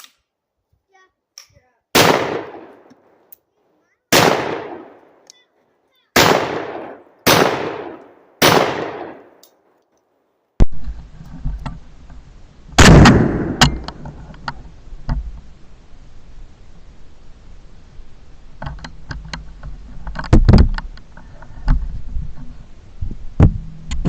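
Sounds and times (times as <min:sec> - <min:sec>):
shotgun shots echoing: 0:01.9 - 0:03.2, 0:04.1 - 0:05.2, 0:06.1 - 0:09.4, 0:12.8 - 0:14.0
bass-heavy gun blast: 0:02.0 - 0:02.8, 0:04.1 - 0:05.0, 0:06.2 - 0:09.3, 0:12.8 - 0:14.0
sharp gun clicks: 0:06.2 - 0:10.1.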